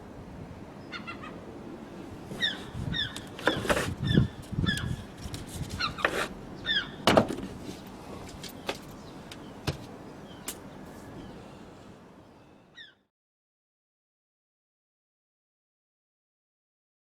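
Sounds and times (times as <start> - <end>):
bird chirping: 2.3 - 7.1, 8.3 - 13.0
parts knocking and clicking: 7.0 - 10.7.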